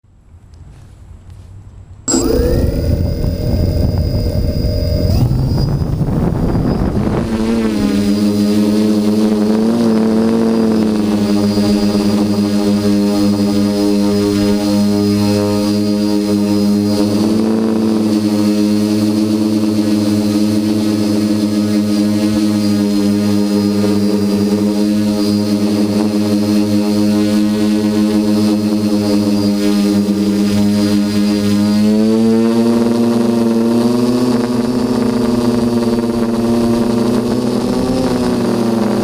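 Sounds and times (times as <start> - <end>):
rushing noise: 2.1 - 7.2
quadcopter motors buzzing: 2.1 - 39.0.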